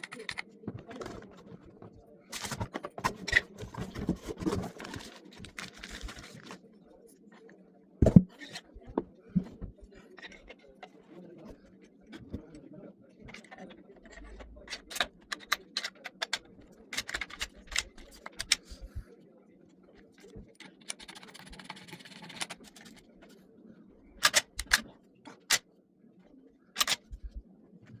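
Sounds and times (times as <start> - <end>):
shotgun parts clicking: 24.2 - 24.9.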